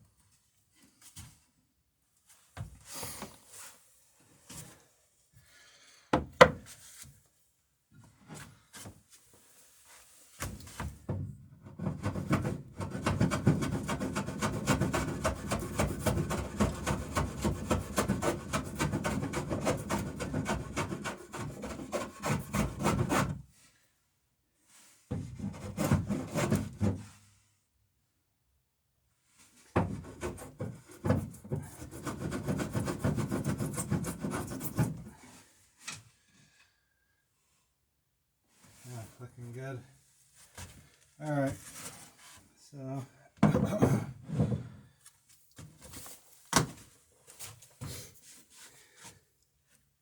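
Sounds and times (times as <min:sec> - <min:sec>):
hand tool scraping wooden plank: 0:11.7 - 0:23.4, 0:25.2 - 0:26.9, 0:29.8 - 0:35.4.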